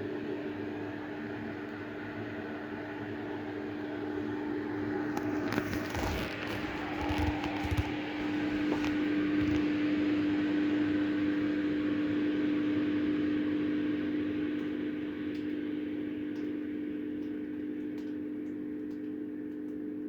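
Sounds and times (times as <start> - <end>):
fan rushing and humming: 0.0 - 19.5.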